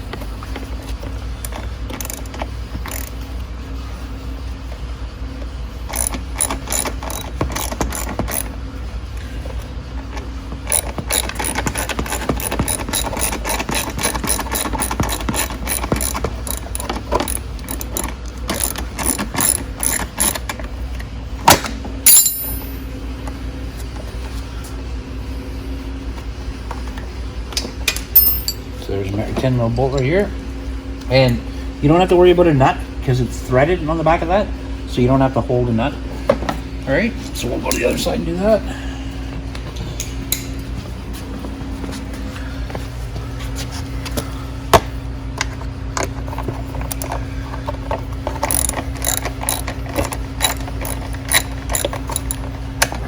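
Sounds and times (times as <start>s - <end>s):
socket ratchet clicking: 48.4s - 52.4s.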